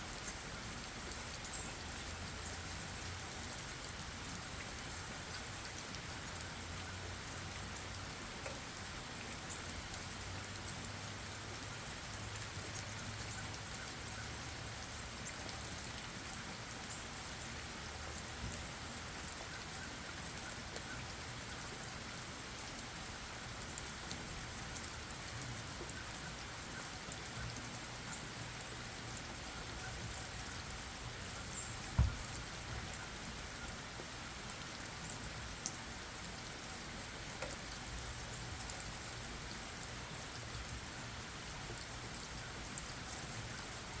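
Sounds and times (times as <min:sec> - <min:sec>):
rain falling on leaves: 0:00.0 - 0:44.0
dripping ticks: 0:00.2 - 0:43.9
short low thump: 0:32.0 - 0:32.3.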